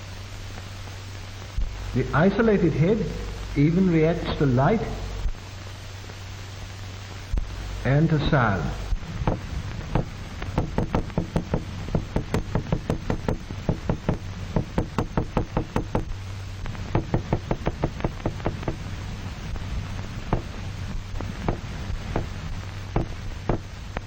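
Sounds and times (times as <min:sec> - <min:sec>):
steady low hum: 0:00.0 - 0:24.0
sharp knocks on a hard surface: 0:10.0 - 0:16.1, 0:16.9 - 0:18.8, 0:20.3 - 0:20.5, 0:21.4 - 0:22.3, 0:22.9 - 0:23.7.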